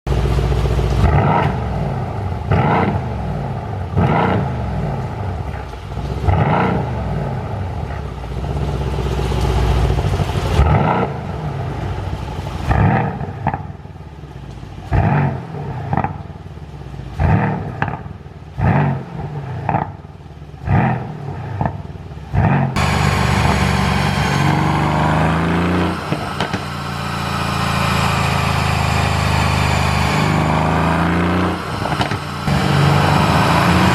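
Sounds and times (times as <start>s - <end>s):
exhaust pops and crackles: 0.1s - 1.8s, 4.9s - 6.5s, 7.8s - 11.2s, 11.8s - 16.4s, 17.0s - 18.2s, 22.8s - 30.4s, 31.3s - 33.9s
car engine revving: 0.1s - 5.2s, 20.6s - 33.9s.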